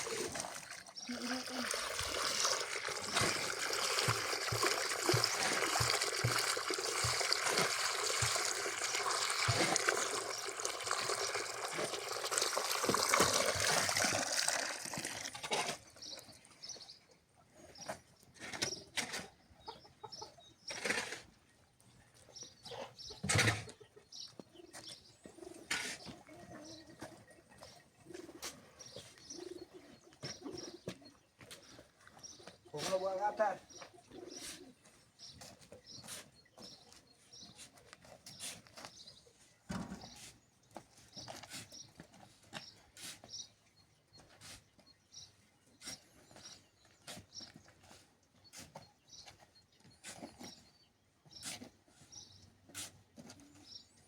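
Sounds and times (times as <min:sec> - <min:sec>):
water running from hose: 0:00.0 - 0:16.2
pigeons cooing: 0:24.6 - 0:31.0, 0:33.8 - 0:35.0.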